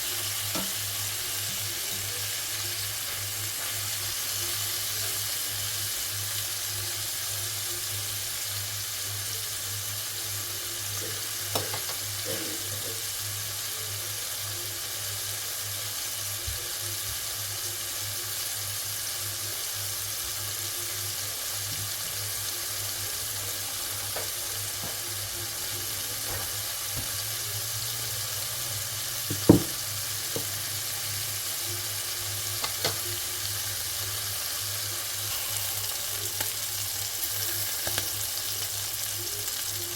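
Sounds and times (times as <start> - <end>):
food sizzling in a pan: 0.0 - 39.9
utensil knocking on pan: 29.3 - 30.5.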